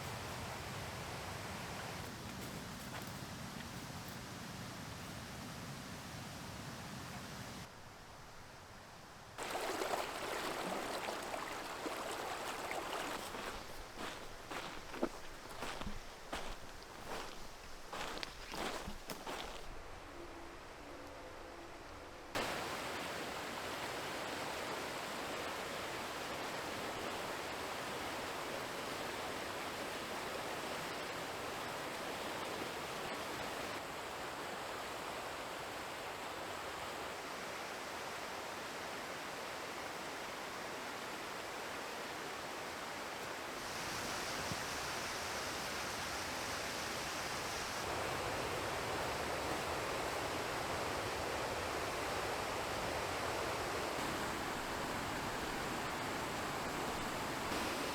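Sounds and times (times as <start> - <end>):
waterfall rushing: 9.4 - 19.5.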